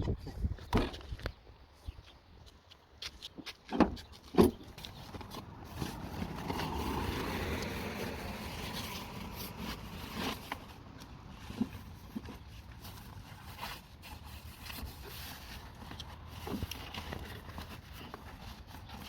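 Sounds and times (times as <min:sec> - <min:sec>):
vehicle passing by: 0:05.3 - 0:10.5.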